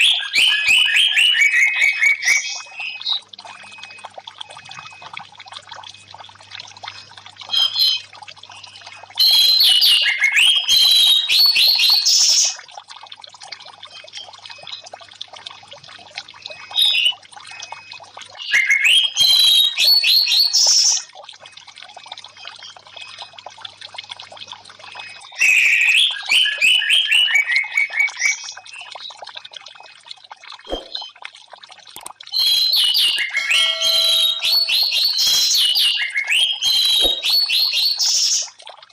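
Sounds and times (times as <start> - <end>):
trickling water: 0.0 - 38.9.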